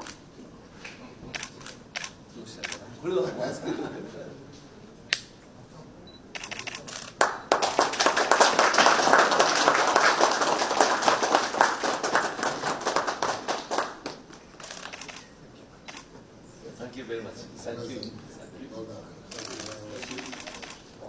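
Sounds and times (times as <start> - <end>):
audience applauding: 6.9 - 15.0.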